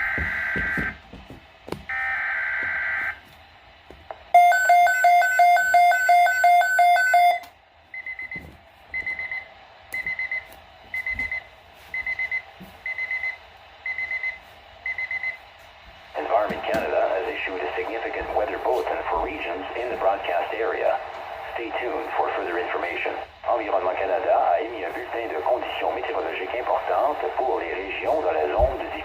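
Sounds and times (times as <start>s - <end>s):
pulsing alarm tone: 4.4s - 7.5s.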